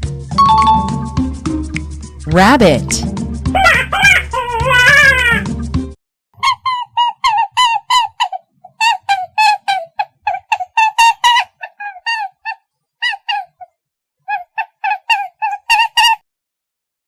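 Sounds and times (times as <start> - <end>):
rabbit squeaking: 6.4 - 13.7, 14.3 - 16.2.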